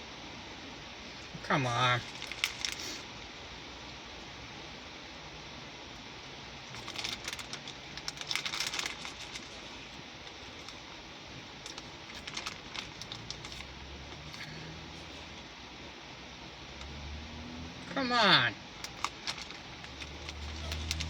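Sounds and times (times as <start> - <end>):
hard candies rattling: 2.0 - 2.9, 6.7 - 10.9, 11.5 - 15.3, 18.8 - 21.0
candy bag crinkling: 2.0 - 3.1, 6.6 - 15.4, 18.6 - 21.0.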